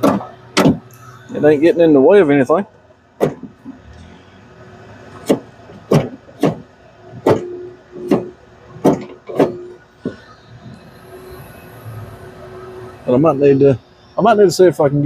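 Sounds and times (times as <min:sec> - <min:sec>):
car door lock clunks: 0:00.0 - 0:00.9, 0:03.2 - 0:03.8, 0:05.2 - 0:10.2.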